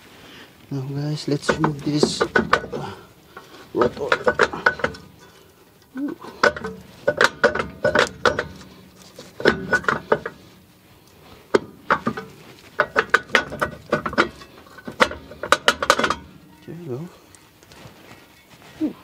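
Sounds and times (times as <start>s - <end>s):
metal clanks and knocks: 1.2s - 17.9s
metal ringing: 1.3s - 18.7s.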